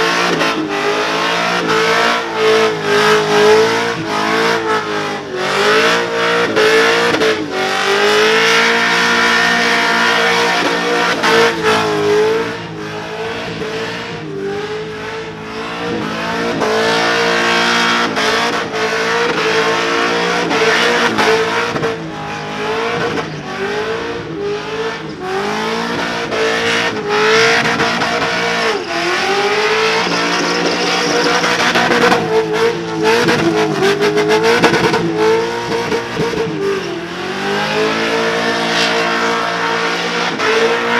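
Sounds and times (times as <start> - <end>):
engine revving high: 0.0 - 40.9
spinning tyres hissing: 24.2 - 40.9.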